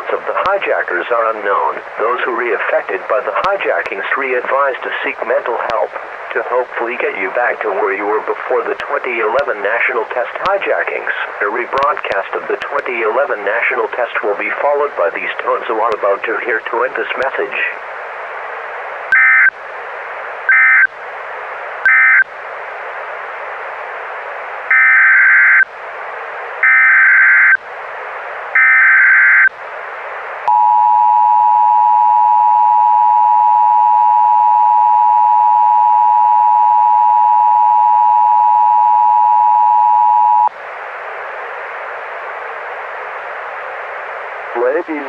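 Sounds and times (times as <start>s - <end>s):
radio hiss: 0.0s - 30.6s, 39.8s - 45.0s
shrill data bursts: 20.5s - 20.9s, 24.7s - 25.7s, 28.6s - 29.5s.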